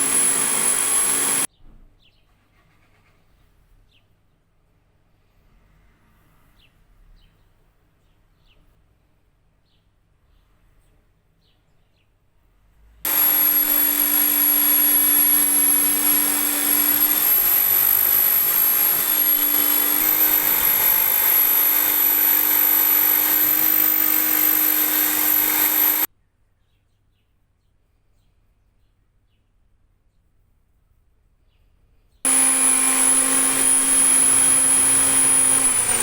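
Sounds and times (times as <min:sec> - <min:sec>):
electric power tool whining: 0:00.0 - 0:01.5, 0:13.1 - 0:26.1, 0:32.3 - 0:36.0.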